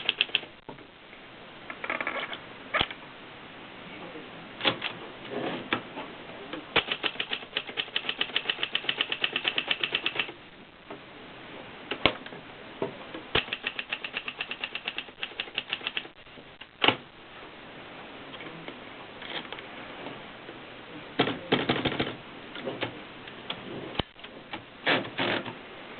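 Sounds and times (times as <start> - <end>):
loud typewriter clack: 0.0 - 0.5, 6.8 - 10.3, 13.4 - 16.1
typewriter keystrokes: 0.0 - 0.5, 6.8 - 10.3, 13.4 - 16.1.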